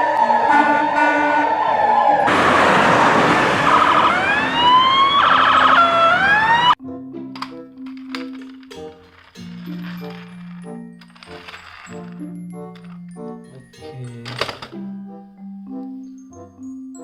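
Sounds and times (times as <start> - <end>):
toy engine noise with siren whoops: 3.6 - 6.8.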